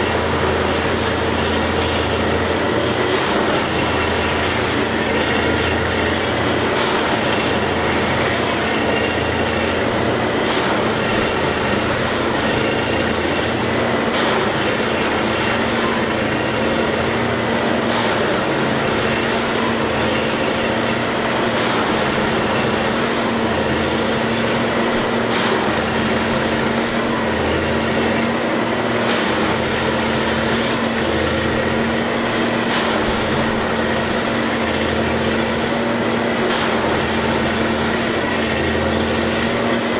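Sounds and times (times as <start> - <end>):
machine engine hum: 0.0 - 39.9.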